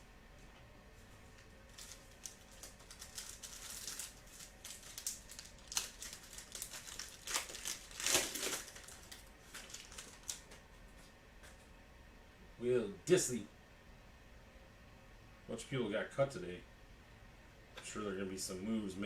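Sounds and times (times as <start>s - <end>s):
foil wrappers tearing and crinkling: 1.7s - 10.6s.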